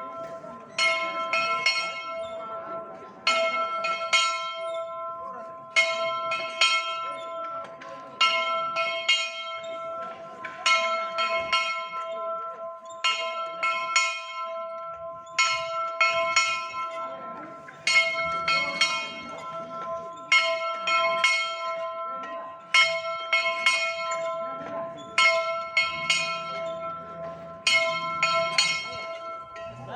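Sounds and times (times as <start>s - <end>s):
metal bell ringing: 8.2s - 29.9s.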